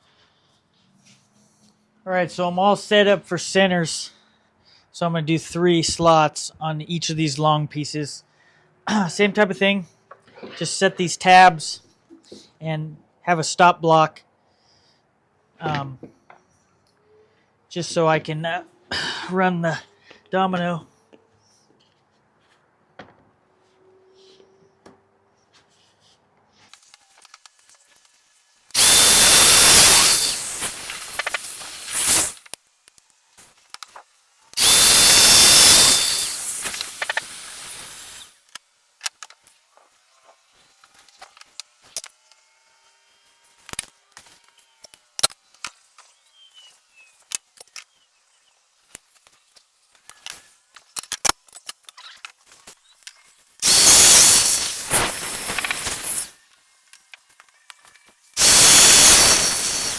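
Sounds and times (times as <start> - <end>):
power joiner motor whining: 28.8 - 32.4, 34.6 - 38.3, 53.6 - 56.3, 58.4 - 59.9.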